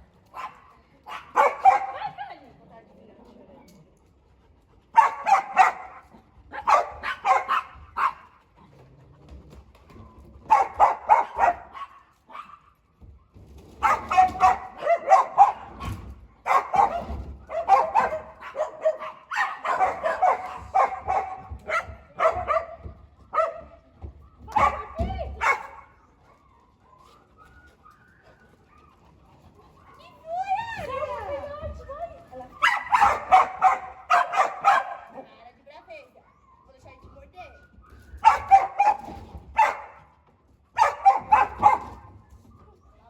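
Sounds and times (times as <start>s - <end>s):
dog barking: 0.3s - 2.2s, 4.9s - 8.4s, 10.5s - 12.6s, 13.8s - 23.8s, 24.6s - 25.9s, 32.6s - 35.3s, 38.2s - 40.1s, 40.8s - 42.1s.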